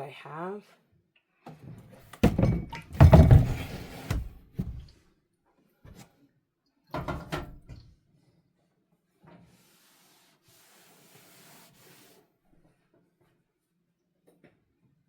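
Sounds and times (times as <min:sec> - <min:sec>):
knocks of household items: 0:02.2 - 0:04.8.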